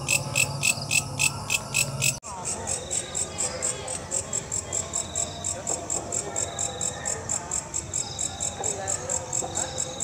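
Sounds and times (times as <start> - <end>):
katydid chirping: 0.0 - 3.3.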